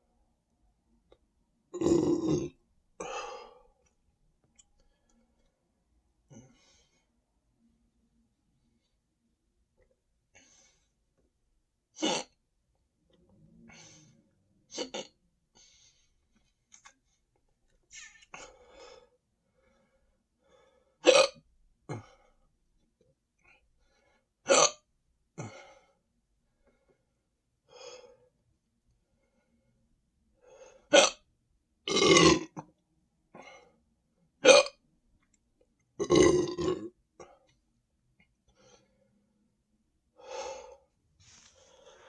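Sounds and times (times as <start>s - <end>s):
person burping: 1.7s - 3.5s, 12.0s - 12.4s, 14.7s - 15.2s, 21.0s - 22.1s, 24.5s - 24.8s, 30.9s - 31.2s, 31.9s - 32.6s, 34.4s - 34.8s, 36.0s - 37.4s
person hiccuping: 14.7s - 15.1s, 21.0s - 21.4s, 24.5s - 24.8s, 30.9s - 31.2s, 34.4s - 34.8s.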